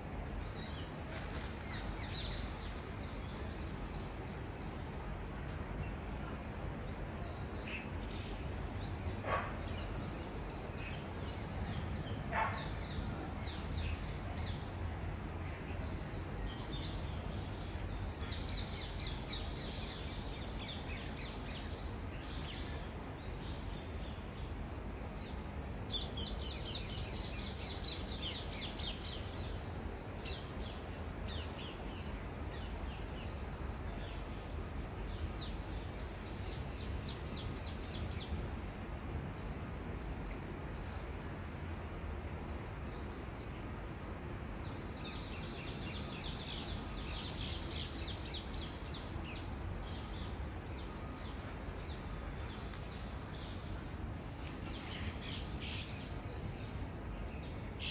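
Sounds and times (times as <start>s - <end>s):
distant city traffic: 0.0s - 57.9s
small birds chirping: 0.4s - 22.6s, 44.6s - 57.9s.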